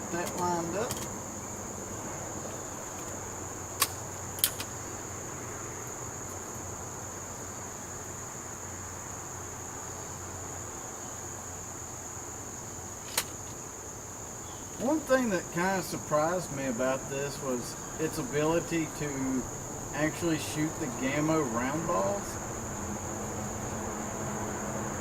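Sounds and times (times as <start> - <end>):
crickets trilling: 0.0 - 25.0
sharp cracks: 2.9 - 4.8, 13.0 - 13.6.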